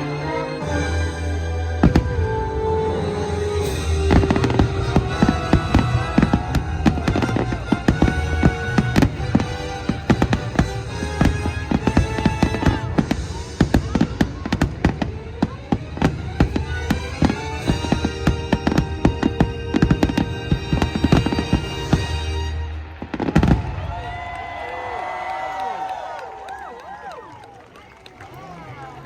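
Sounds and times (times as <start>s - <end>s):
orchestral show music: 0.0s - 24.2s
fireworks bursting: 3.6s - 24.4s.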